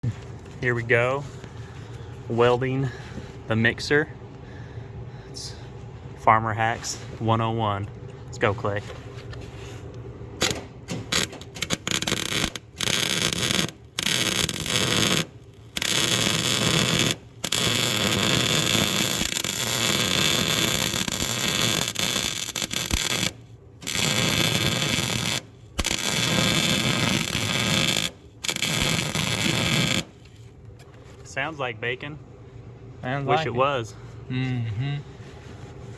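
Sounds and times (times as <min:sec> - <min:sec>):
arc welding crackle: 0:10.4 - 0:30.5.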